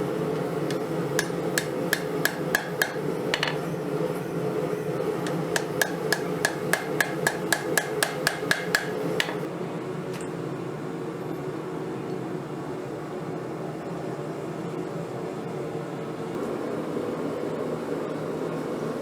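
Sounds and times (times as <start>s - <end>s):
steady low hum: 0.0s - 11.9s
hammer striking steel on anvil: 0.7s - 3.6s, 5.2s - 9.5s.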